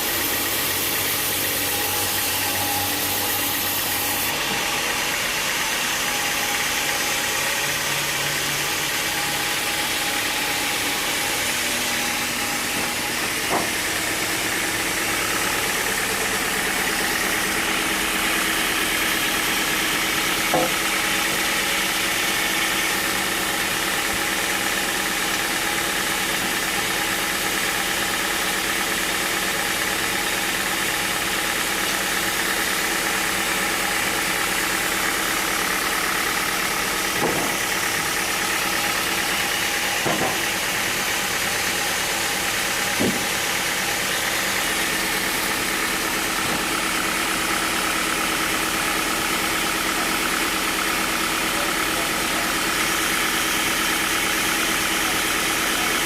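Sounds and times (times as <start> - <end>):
sawmill machinery hum: 0.0 - 56.0
short knocks: 12.6 - 13.8, 37.2 - 37.6, 40.0 - 40.5, 43.0 - 43.3.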